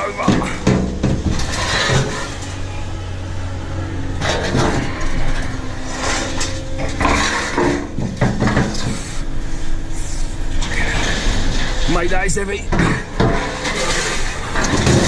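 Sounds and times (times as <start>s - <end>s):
metal knocking and scraping: 0.0s - 15.0s
steady low hum: 0.0s - 15.0s.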